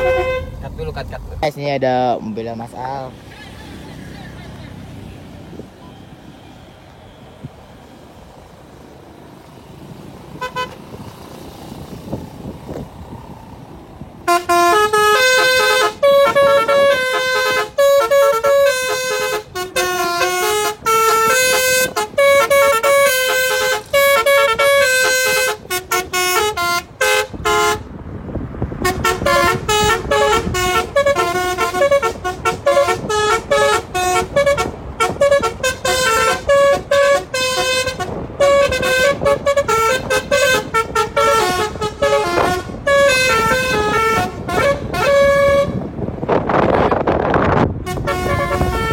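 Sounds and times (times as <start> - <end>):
multi-tone car horn tune: 0.0 - 0.8, 10.4 - 10.9, 14.2 - 28.0, 28.7 - 48.9.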